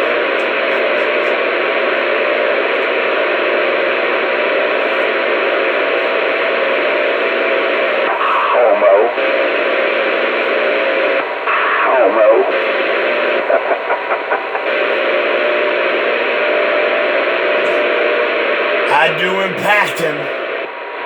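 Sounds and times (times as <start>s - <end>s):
radio static hiss: 12.0s - 20.5s.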